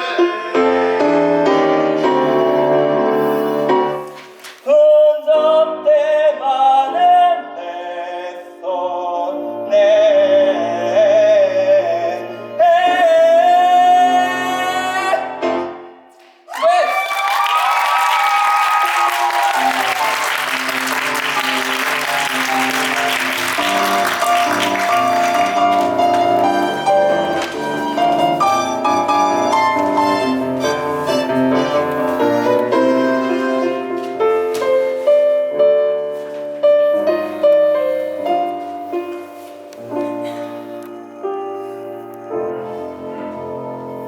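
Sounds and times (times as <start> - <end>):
piano music: 0.0 - 16.1, 18.8 - 44.0
audience applause: 16.5 - 28.0.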